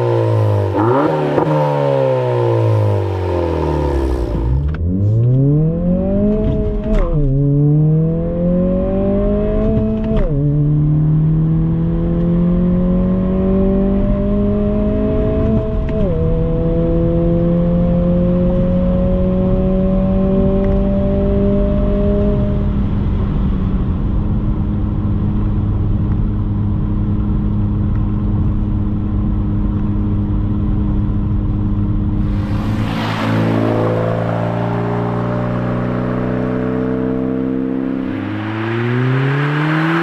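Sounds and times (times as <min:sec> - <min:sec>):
car exhaust accelerating: 0:00.0 - 0:23.1, 0:31.8 - 0:40.0.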